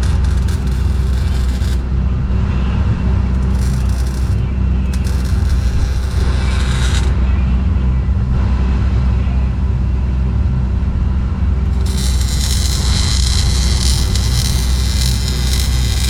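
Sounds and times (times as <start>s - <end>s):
welding arc sizzling: 0.0s - 2.0s, 3.2s - 7.2s, 11.7s - 16.0s
low engine drone: 0.0s - 16.0s.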